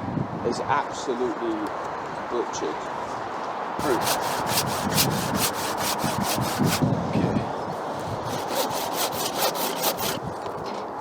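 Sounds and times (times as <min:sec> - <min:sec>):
hand saw cutting branch: 0:03.8 - 0:06.9, 0:07.7 - 0:10.6.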